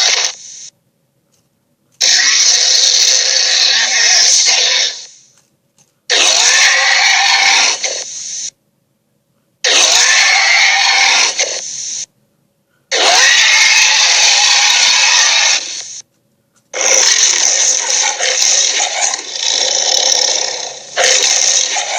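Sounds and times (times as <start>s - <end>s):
raspy creature roar: 2.0s - 5.1s, 6.1s - 8.1s, 9.7s - 11.6s, 12.9s - 15.9s, 16.8s - 21.9s.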